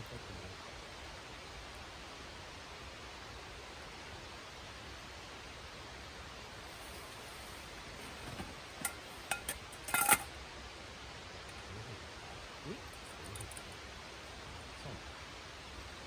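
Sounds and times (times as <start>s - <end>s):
steady hiss: 0.0s - 16.0s
cookware clinking: 6.8s - 10.3s.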